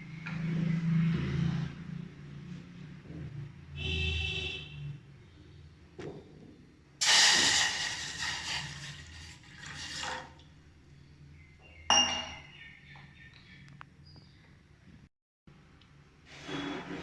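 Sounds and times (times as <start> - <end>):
liquid pouring into a pot: 7.0 - 10.5
kitchenware clinking: 11.9 - 12.5.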